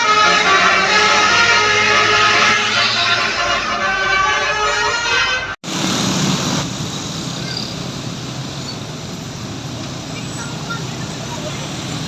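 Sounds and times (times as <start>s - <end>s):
musical air horn melody: 0.0s - 5.6s
road traffic noise: 0.0s - 12.0s.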